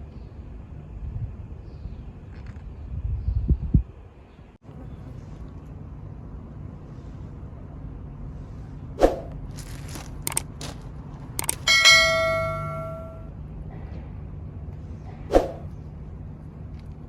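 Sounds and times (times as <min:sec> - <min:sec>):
light clicks: 0:11.4 - 0:11.7
bell-like metallic ring: 0:11.7 - 0:13.3.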